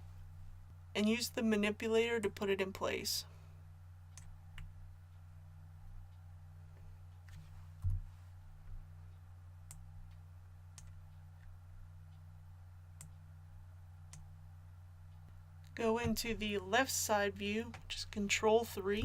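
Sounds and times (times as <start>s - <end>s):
low electrical hum: 0.0s - 19.0s
computer mouse clicks: 4.1s - 4.7s, 9.6s - 11.5s, 14.1s - 14.3s.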